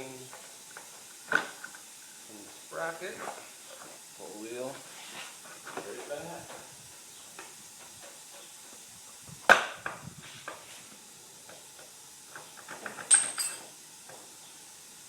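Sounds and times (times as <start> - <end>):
rattling clatter: 12.7 - 13.7
metallic ring: 13.1 - 13.7.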